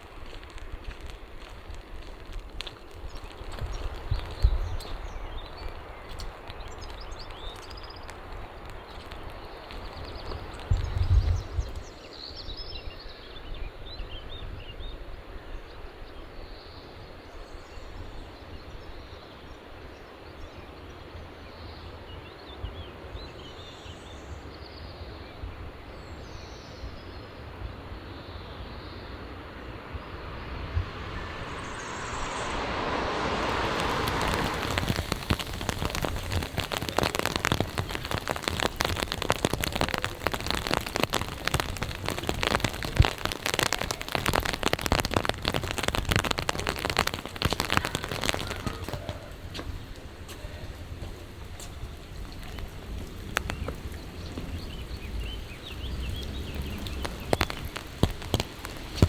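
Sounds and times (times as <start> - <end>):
raindrops on hard surface: 0.0 - 12.7, 29.5 - 59.0
steady rain hiss: 0.0 - 13.3, 16.5 - 59.0.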